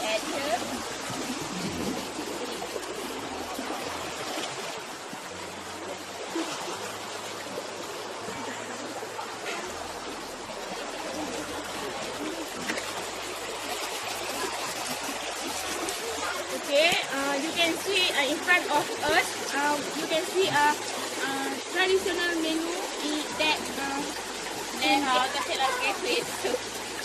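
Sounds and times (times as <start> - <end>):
river water flowing: 0.0 - 27.0.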